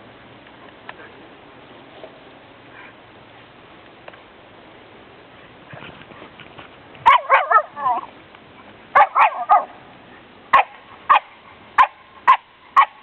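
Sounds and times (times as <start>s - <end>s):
dog barking and yipping: 7.0s - 8.1s, 8.9s - 9.8s, 10.5s - 13.0s.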